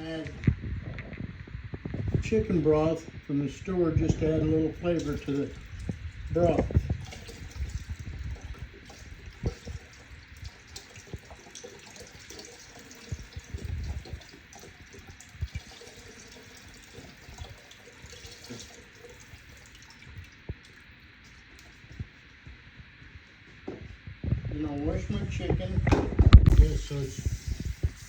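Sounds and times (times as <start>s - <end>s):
running water hissing: 2.2s - 22.3s, 26.5s - 28.0s.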